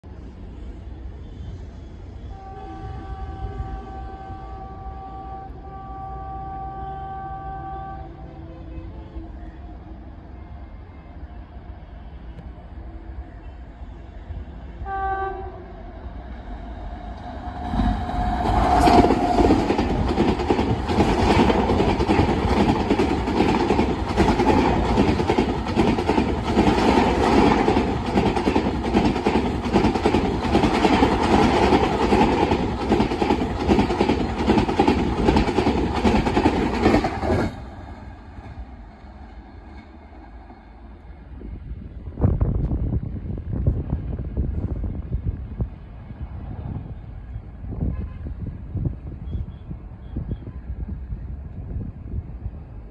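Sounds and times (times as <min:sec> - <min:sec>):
train horn blast: 0:02.2 - 0:09.6, 0:14.8 - 0:16.2, 0:47.7 - 0:48.6
train wheels clattering over rail joints: 0:17.7 - 0:37.6.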